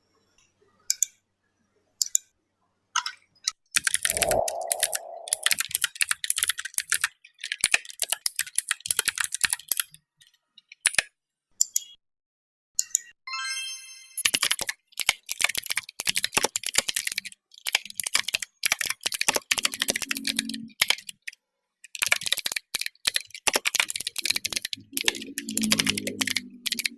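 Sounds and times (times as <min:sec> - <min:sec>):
mechanical keyboard typing: 0:03.8 - 0:10.0, 0:10.8 - 0:11.0, 0:14.2 - 0:26.9.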